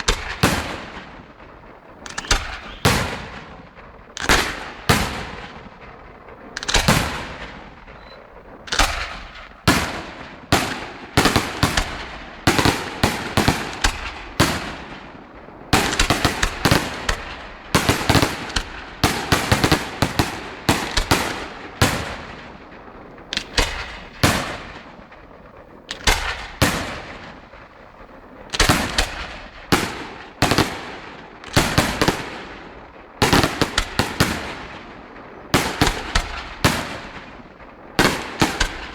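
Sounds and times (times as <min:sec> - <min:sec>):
fireworks bangs: 0:00.0 - 0:38.9.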